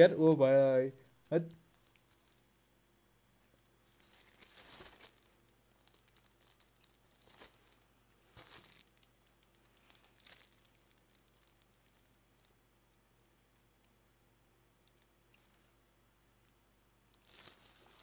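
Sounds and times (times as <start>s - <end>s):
plastic packaging crinkling: 3.5s - 12.6s, 17.1s - 18.0s.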